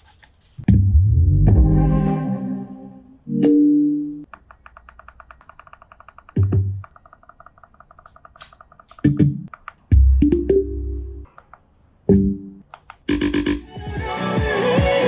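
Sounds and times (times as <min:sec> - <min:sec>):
long deep bass note: 0:00.7 - 0:02.2
plucked synth notes: 0:10.0 - 0:11.2.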